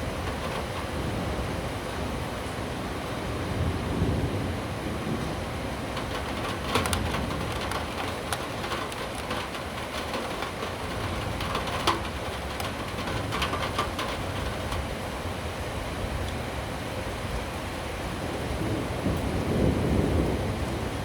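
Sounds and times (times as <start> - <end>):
steady rain: 0.0 - 21.0
sharp ticks: 6.0 - 14.9.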